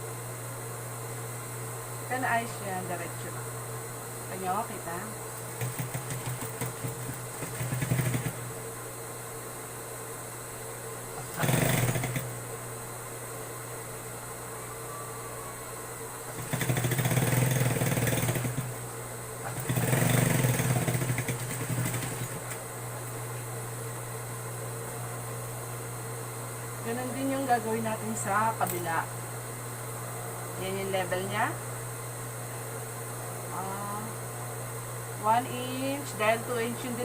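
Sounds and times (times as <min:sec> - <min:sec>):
steady low hum: 0:00.0 - 0:37.0
sewing machine stitching: 0:05.5 - 0:08.5, 0:11.2 - 0:12.4, 0:16.3 - 0:18.7, 0:19.4 - 0:22.6.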